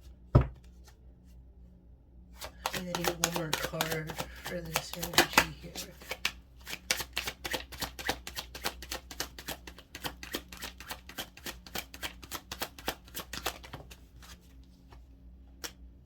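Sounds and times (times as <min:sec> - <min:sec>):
cards being shuffled: 0:02.4 - 0:15.0.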